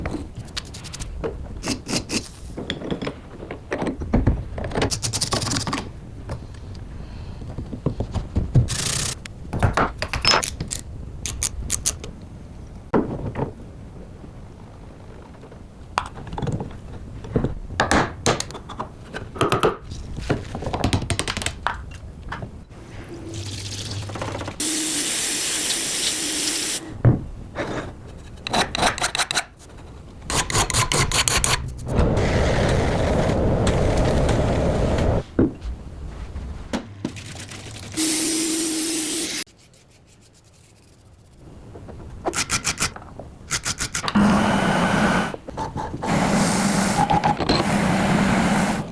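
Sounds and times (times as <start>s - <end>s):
spray hissing: 24.6s - 26.9s, 38.0s - 39.5s.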